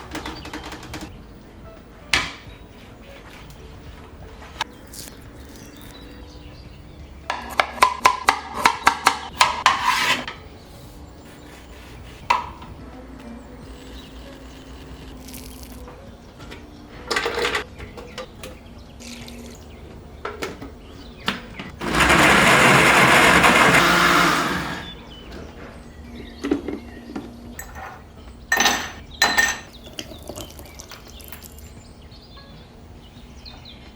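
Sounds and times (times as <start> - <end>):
knocks and clatters: 0.0 - 1.1
blender motor running: 21.8 - 25.0.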